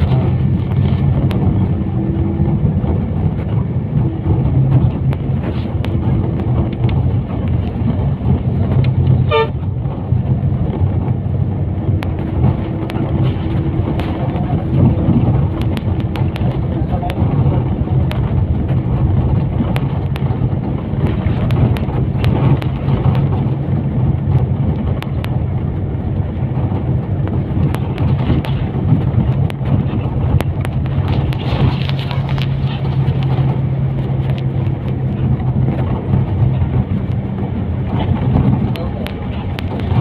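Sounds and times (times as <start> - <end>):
sharp clicks and rattles: 0.0 - 40.0
vehicle engine and road drone: 0.0 - 40.0.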